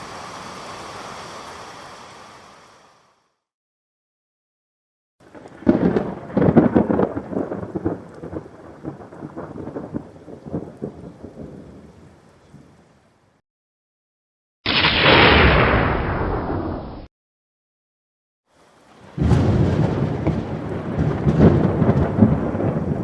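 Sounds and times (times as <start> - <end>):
thunderclap: 5.2 - 11.6, 14.7 - 17.1, 19.1 - 23.0
thunder crackles: 5.2 - 11.8, 14.7 - 17.1, 19.0 - 23.0
thunder rumbling: 5.2 - 11.8, 14.7 - 17.1, 19.0 - 23.0.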